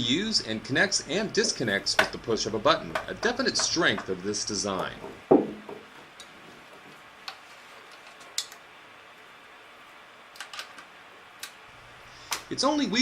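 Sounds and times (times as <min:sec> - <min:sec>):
loud knock: 0:05.0 - 0:05.9.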